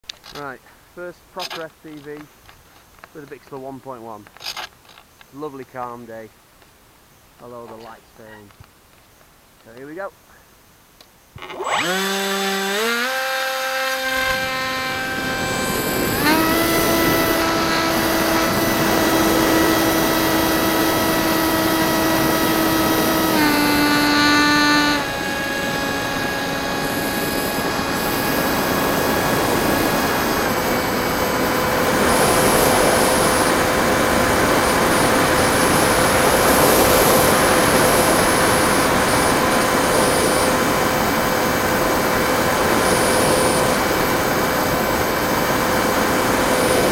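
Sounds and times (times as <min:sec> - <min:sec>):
electric motor and propeller whine: 0:11.4 - 0:46.9.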